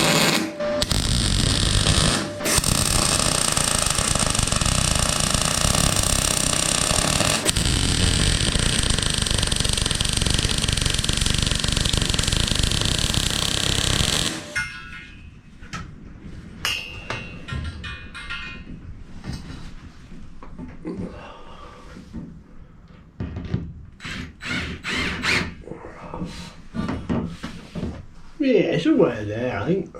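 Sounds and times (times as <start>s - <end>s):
welder arc crackling: 0.0s - 14.6s.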